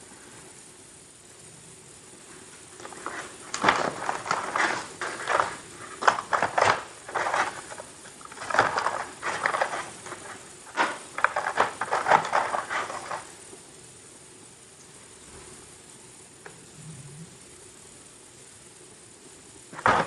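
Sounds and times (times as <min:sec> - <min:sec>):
packaging crinkling: 0:02.8 - 0:13.3, 0:19.8 - 0:20.0.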